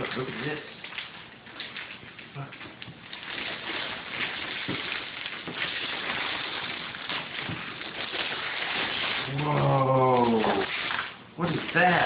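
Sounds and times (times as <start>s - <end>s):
wrapping paper rustling and tearing: 0.0s - 12.0s.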